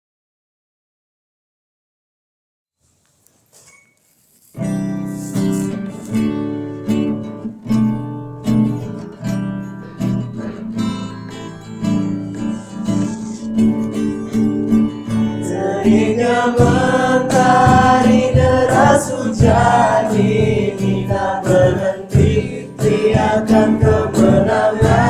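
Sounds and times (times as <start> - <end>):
acoustic guitar strumming chords: 4.5 - 25.0.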